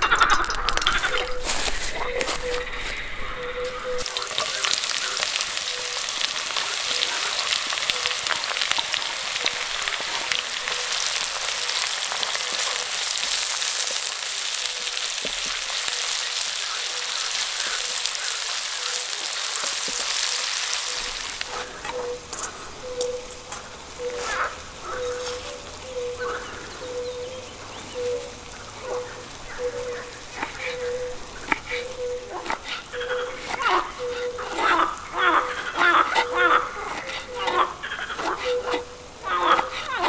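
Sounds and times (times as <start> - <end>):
food sizzling in a pan: 0.0 - 40.0.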